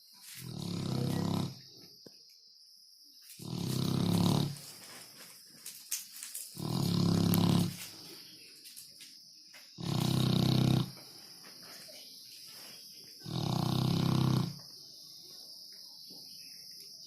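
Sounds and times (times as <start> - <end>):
dog snoring: 0.4 - 1.7, 3.4 - 4.7, 6.6 - 7.9, 9.8 - 11.0, 13.2 - 14.6.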